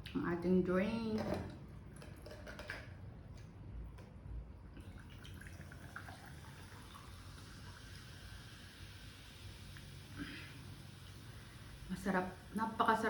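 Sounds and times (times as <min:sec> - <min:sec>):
faint fizzing: 0:04.6 - 0:13.0
soda pouring into glass with ice: 0:04.8 - 0:10.0.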